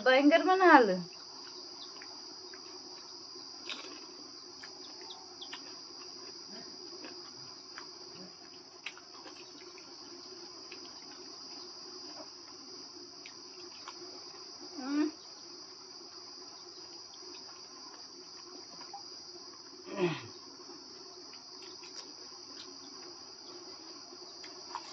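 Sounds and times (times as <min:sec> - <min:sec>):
crickets chirring: 0:00.0 - 0:24.9
person humming: 0:14.8 - 0:15.2, 0:19.9 - 0:20.3.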